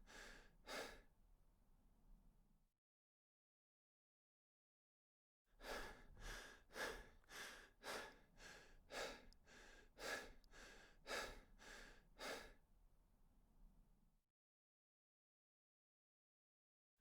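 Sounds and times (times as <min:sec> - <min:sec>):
person breathing hard: 0:00.0 - 0:01.0, 0:05.6 - 0:12.6.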